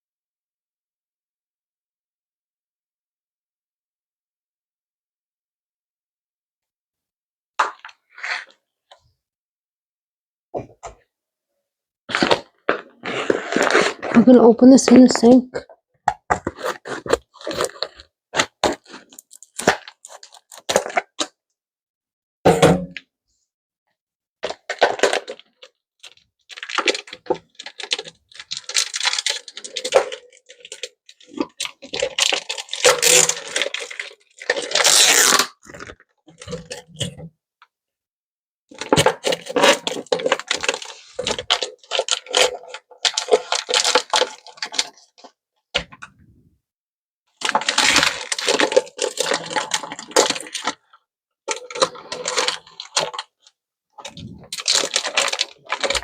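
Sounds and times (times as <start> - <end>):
plastic packaging being torn: 12.1 - 14.3, 16.5 - 21.3, 24.5 - 36.9, 38.8 - 45.1, 47.4 - 50.8, 51.5 - 53.3, 54.0 - 56.0.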